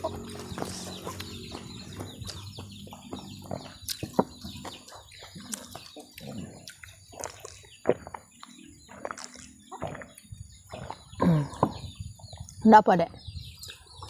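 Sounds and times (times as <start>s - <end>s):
chicken-like cluck: 0.0s - 8.2s
birds chirping: 0.0s - 14.0s.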